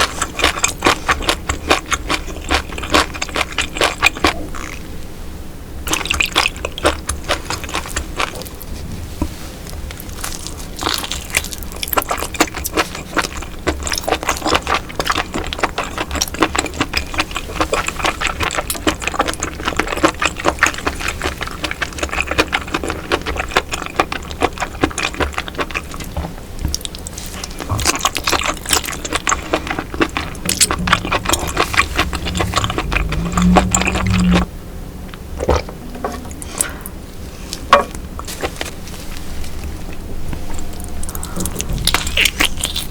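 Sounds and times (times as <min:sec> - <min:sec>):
wet chewing and slurping: 0:00.0 - 0:04.9, 0:05.8 - 0:34.5, 0:35.1 - 0:42.9
short low hum: 0:29.9 - 0:38.2.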